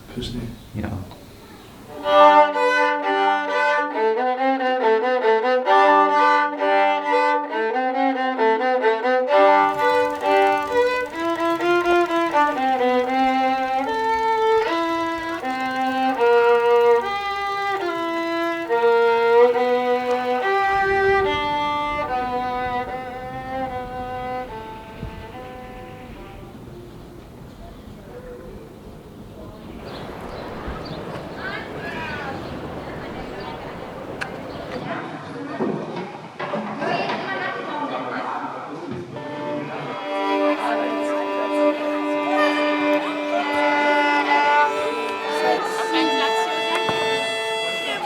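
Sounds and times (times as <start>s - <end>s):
bowed string instrument music: 1.6s - 27.6s, 39.1s - 48.0s.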